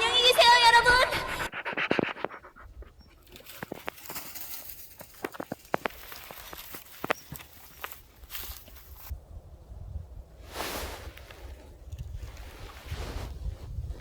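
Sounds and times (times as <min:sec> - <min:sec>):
light crunches and snaps: 0:03.3 - 0:09.1
footsteps on dry ground: 0:03.4 - 0:09.2.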